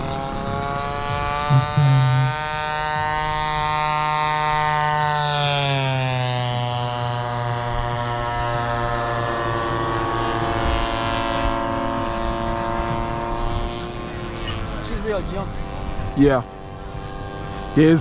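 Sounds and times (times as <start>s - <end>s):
model airplane engine buzzing: 0.0s - 18.0s.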